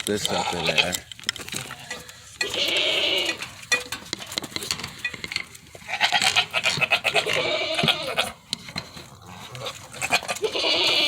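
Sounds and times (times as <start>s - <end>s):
goats bleating: 0.0s - 3.6s, 5.8s - 8.4s, 9.3s - 11.0s.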